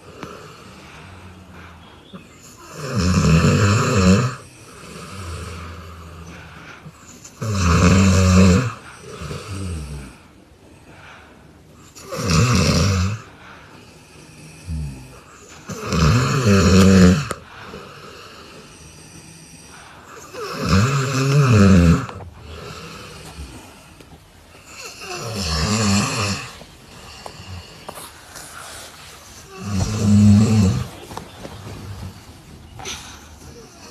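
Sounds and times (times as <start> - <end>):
soft breathing: 0.0 - 2.7, 4.4 - 7.4, 8.6 - 12.2, 13.2 - 33.9
person snoring loudly: 2.4 - 6.4, 7.1 - 10.2, 12.0 - 13.3, 14.2 - 23.9, 24.6 - 28.0, 29.4 - 31.0.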